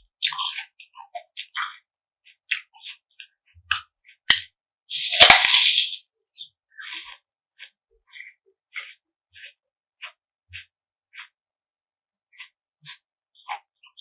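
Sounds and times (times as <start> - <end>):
loud noisy burst: 4.9 - 6.0.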